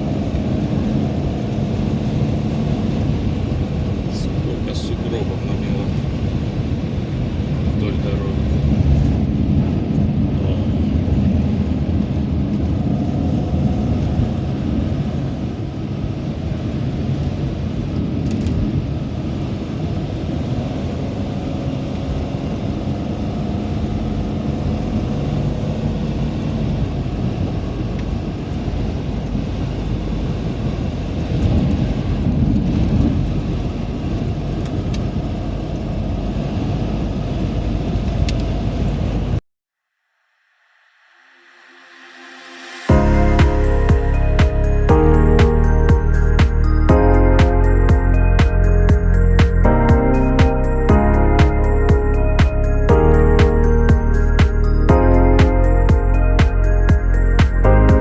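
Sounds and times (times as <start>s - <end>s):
van engine at highway speed: 0.0s - 39.4s
wind noise: 0.0s - 39.4s.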